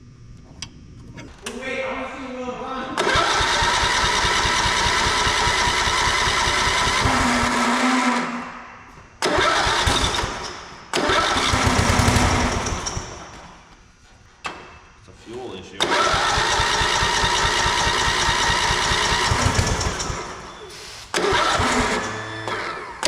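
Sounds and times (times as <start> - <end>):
mower engine starting and stalling: 3.0 - 8.4, 9.2 - 13.3, 15.8 - 20.5, 21.2 - 23.0.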